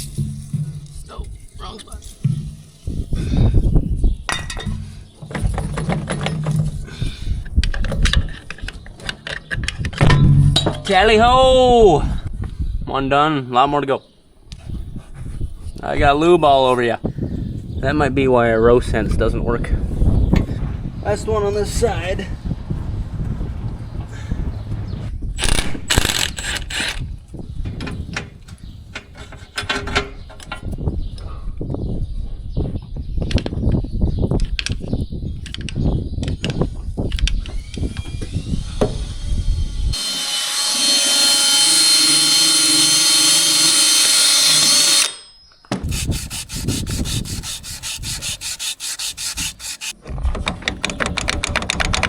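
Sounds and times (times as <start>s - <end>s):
rasping mechanical ratcheting: 25.4s - 27.0s, 45.8s - 50.0s.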